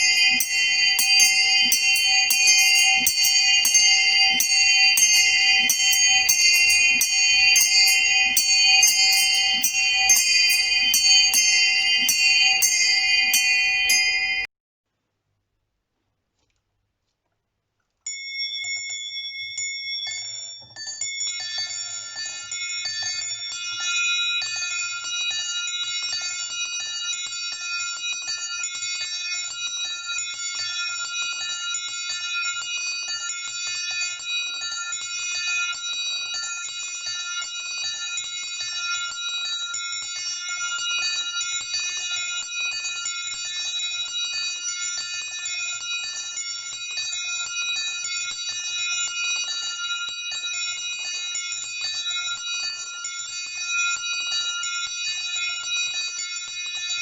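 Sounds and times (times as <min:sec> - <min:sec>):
small bells pealing: 0:00.0 - 0:14.5.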